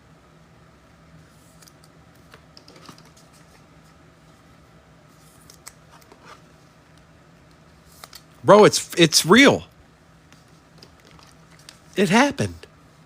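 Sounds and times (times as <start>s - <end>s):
low steady hum: 0.0s - 13.0s
trading cards rustling and clicking: 1.4s - 3.7s, 5.2s - 6.5s, 7.5s - 8.4s, 10.3s - 12.0s.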